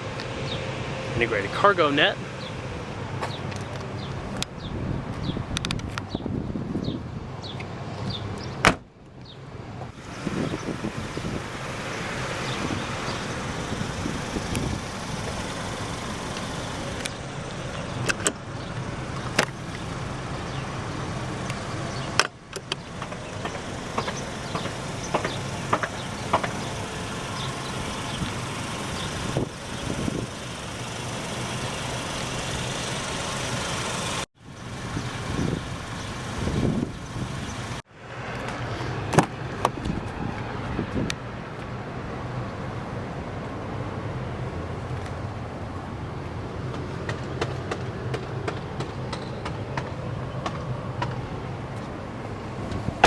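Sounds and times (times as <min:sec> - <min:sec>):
steady car background noise: 0:00.0 - 0:37.9
sharp clicks and knocks: 0:21.5 - 0:26.9.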